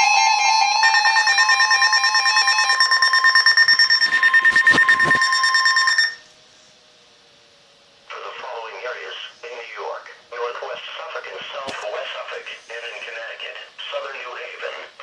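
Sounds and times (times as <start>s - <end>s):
pulsing emergency alert tone: 0.0s - 6.2s
faint hum: 0.0s - 15.0s.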